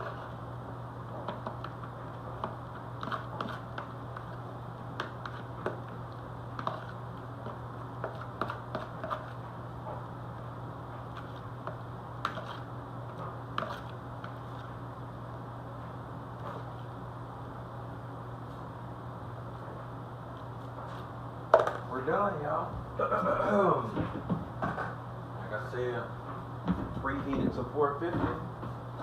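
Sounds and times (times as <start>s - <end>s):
steady low hum: 0.0s - 29.0s
utensil scraping a bowl: 2.4s - 4.4s, 5.0s - 5.8s, 6.6s - 7.0s, 8.0s - 9.4s, 12.2s - 12.7s, 13.6s - 14.8s.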